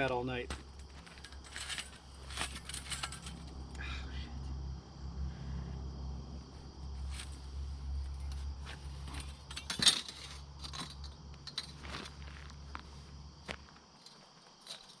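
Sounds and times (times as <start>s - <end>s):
steady low hum: 0.0s - 13.7s
metal blade clinking and rattling: 0.8s - 3.6s, 9.1s - 11.8s.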